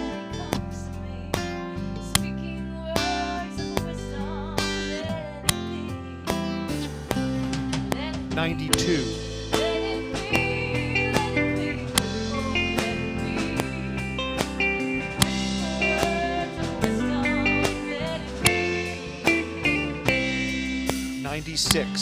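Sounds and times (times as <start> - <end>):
guitar synthesizer lead melody: 0.0 - 22.0
sharp plucked attacks: 4.6 - 22.0.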